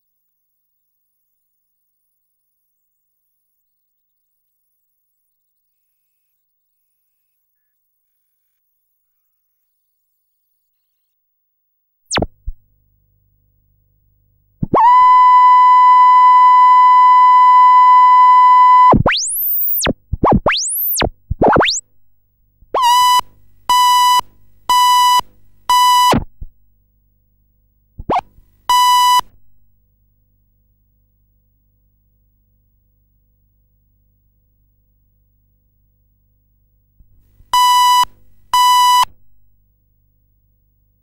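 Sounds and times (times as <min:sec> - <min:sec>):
electronic beeps: 0:12.1 - 0:12.3, 0:16.6 - 0:21.8, 0:22.7 - 0:26.3
electronic pitch sweeps: 0:12.1 - 0:12.3, 0:14.6 - 0:21.8, 0:22.7 - 0:24.2.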